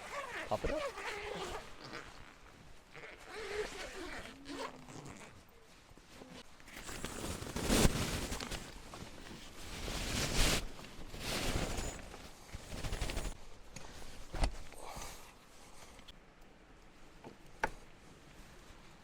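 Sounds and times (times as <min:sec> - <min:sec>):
fabric rustling: 0:00.0 - 0:14.7.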